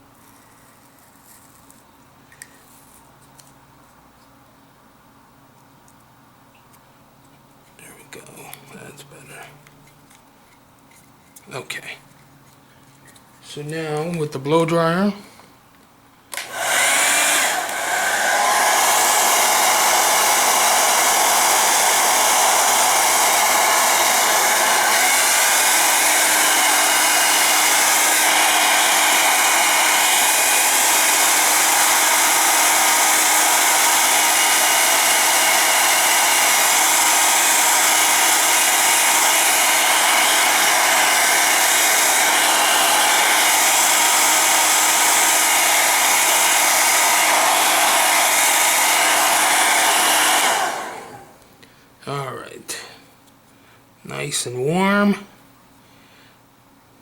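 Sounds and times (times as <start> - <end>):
blow dryer running: 16.3 - 51.4.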